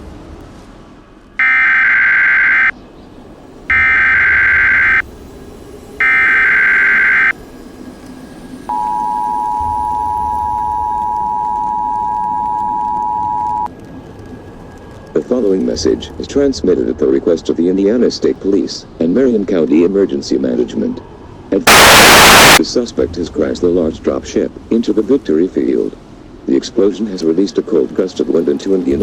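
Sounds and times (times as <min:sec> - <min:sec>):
digital data tone bursts: 0:01.4 - 0:02.7, 0:03.7 - 0:05.0, 0:06.0 - 0:07.3, 0:21.7 - 0:22.6
two-tone attention signal: 0:01.4 - 0:02.7, 0:03.7 - 0:05.0, 0:06.0 - 0:07.3, 0:08.7 - 0:13.7.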